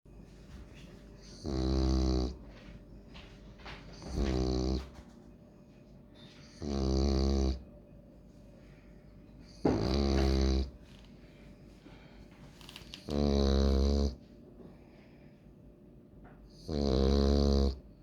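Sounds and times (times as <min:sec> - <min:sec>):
dog snoring: 0:01.2 - 0:02.7, 0:03.9 - 0:05.1, 0:06.4 - 0:07.7, 0:09.4 - 0:10.9, 0:12.9 - 0:14.2, 0:16.5 - 0:18.0.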